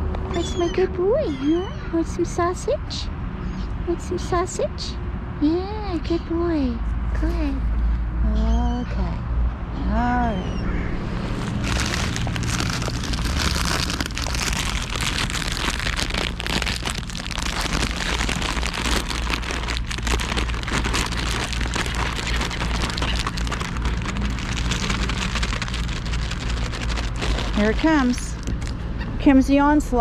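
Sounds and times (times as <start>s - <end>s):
low rumble: 7.0s - 30.0s.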